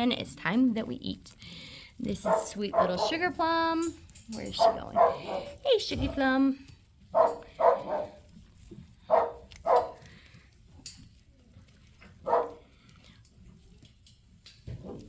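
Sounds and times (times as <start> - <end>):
dog barking: 2.2 - 3.3, 4.6 - 5.6, 7.1 - 8.3, 9.1 - 10.0, 12.2 - 12.7.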